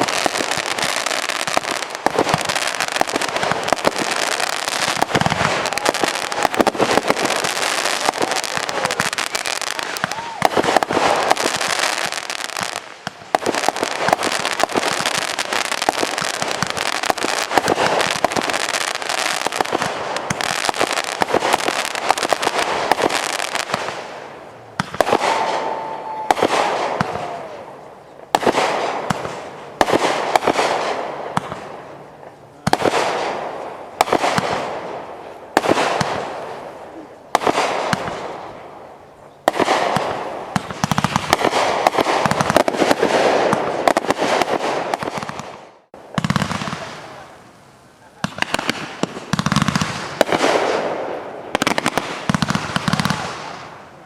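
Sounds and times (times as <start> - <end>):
firework whistle: 0.0 - 12.5, 24.9 - 29.2
firework bangs with crackle: 0.0 - 47.4, 48.2 - 53.9
fireworks cracking and popping: 0.0 - 54.0.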